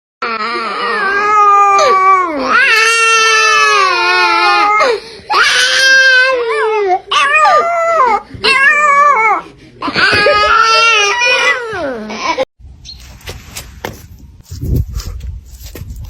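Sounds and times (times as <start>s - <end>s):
wavering crying wails: 0.2s - 12.5s.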